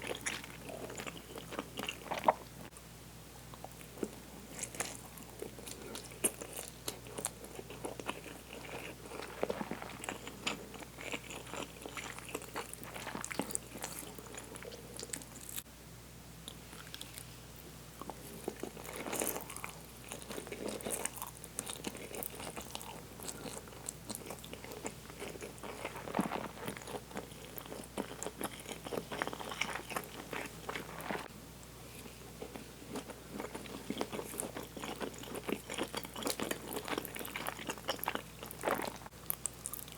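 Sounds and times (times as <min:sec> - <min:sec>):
person chewing noisily: 0:00.0 - 0:02.7, 0:03.6 - 0:15.6, 0:18.0 - 0:31.3, 0:31.9 - 0:39.9.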